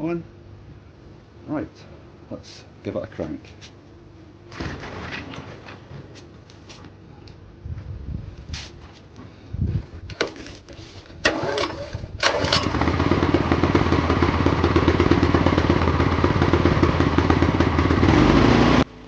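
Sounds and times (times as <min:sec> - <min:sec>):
generator engine cranking and running: 0:11.2 - 0:18.8.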